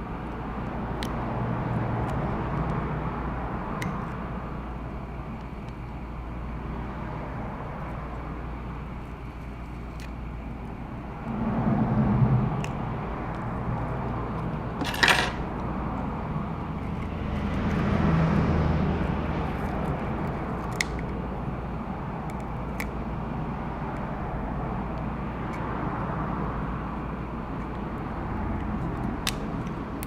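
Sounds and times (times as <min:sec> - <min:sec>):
low background rumble: 0:00.6 - 0:14.8.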